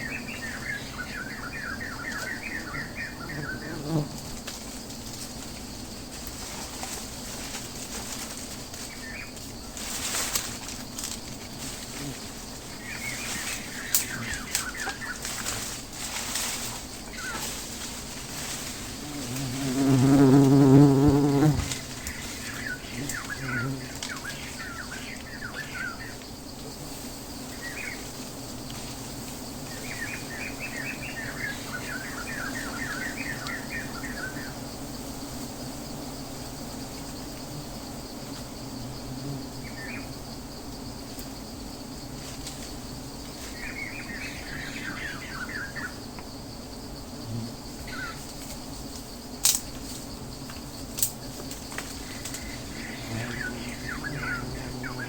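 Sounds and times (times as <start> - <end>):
small birds chirping: 52.0 - 55.0.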